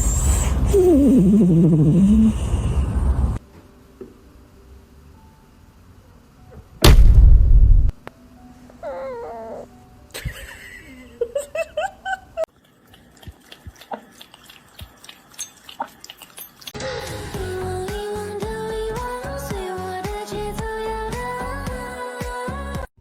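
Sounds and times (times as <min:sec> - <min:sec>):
loud thump: 0:06.8 - 0:08.0
pet animal whining: 0:08.7 - 0:09.8.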